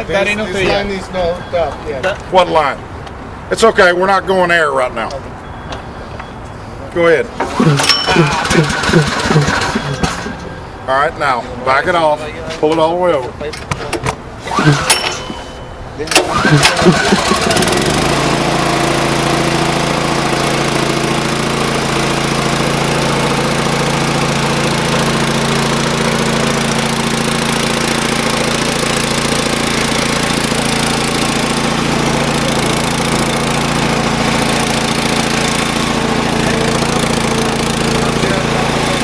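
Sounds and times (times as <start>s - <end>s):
small gasoline engine idling: 7.6s - 10.6s, 16.2s - 39.0s.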